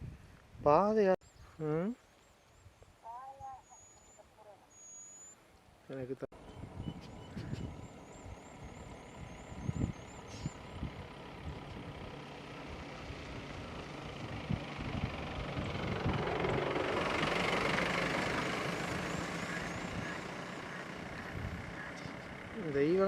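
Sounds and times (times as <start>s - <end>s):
vehicle engine running: 6.4s - 23.0s
vehicle passing: 6.6s - 23.0s.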